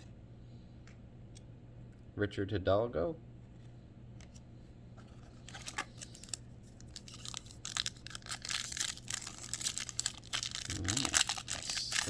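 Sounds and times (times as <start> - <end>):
foil wrapper crinkling: 5.4 - 12.0.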